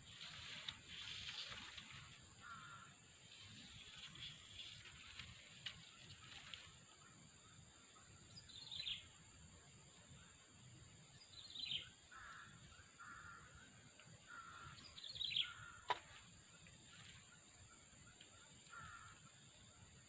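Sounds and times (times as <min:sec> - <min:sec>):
crow cawing: 0:02.4 - 0:03.0, 0:12.1 - 0:13.7, 0:14.3 - 0:14.8, 0:15.4 - 0:16.0, 0:18.7 - 0:19.3
soft low bird calls: 0:11.2 - 0:19.4.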